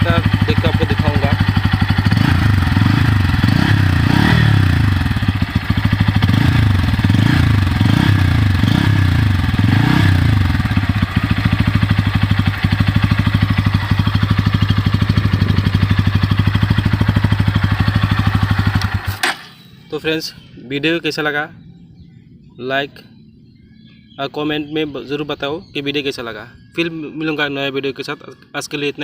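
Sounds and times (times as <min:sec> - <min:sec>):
motorcycle engine revving and idling: 0:00.0 - 0:22.6.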